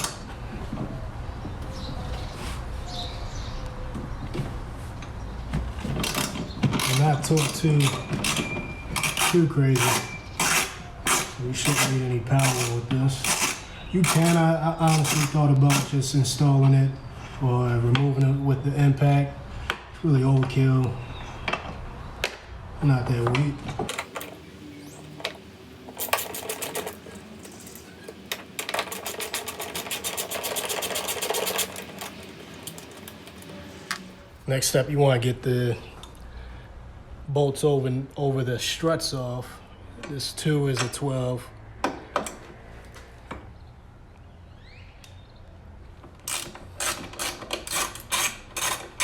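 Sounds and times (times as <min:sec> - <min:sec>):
socket ratchet clicking rapidly: 0:06.0 - 0:08.4, 0:09.0 - 0:15.9, 0:28.8 - 0:32.1, 0:46.3 - 0:49.0.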